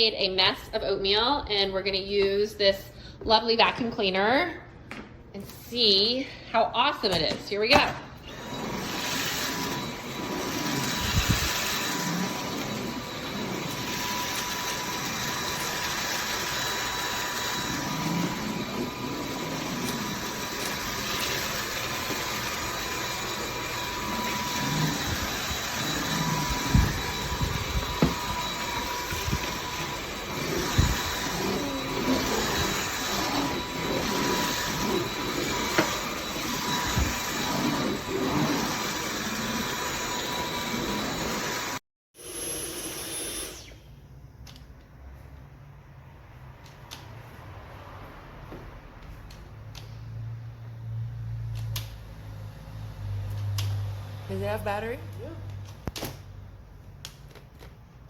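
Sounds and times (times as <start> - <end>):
stick vacuum running: 8.2 - 43.9.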